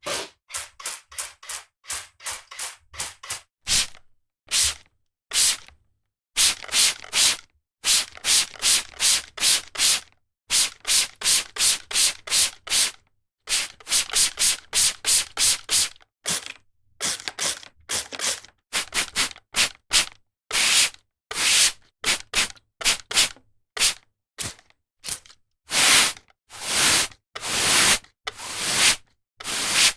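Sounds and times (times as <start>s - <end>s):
squirt bottle spraying: 3.7s - 4.8s, 25.7s - 29.9s.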